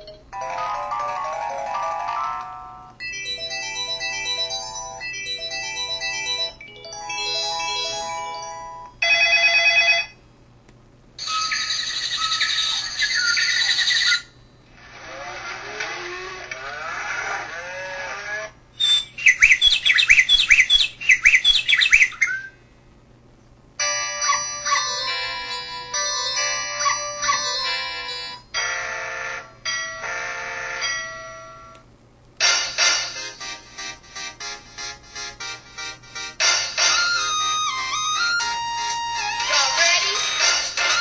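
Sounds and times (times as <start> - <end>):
phone ringtone melodies: 0.0 - 10.2, 11.2 - 14.2, 23.8 - 31.7, 32.4 - 41.0.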